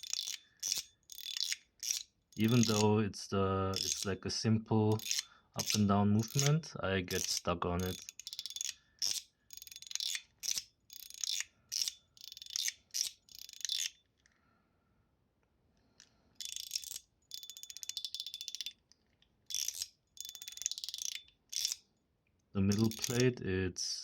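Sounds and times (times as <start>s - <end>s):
fidget slider clicking: 0.0s - 2.9s, 3.7s - 4.1s, 4.9s - 14.0s, 22.7s - 23.2s.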